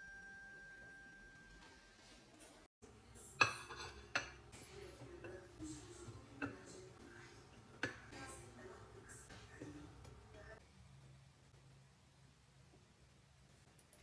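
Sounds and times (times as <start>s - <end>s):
ringing tone: 0.0s - 2.0s
dishes and cutlery clinking: 3.2s - 10.2s.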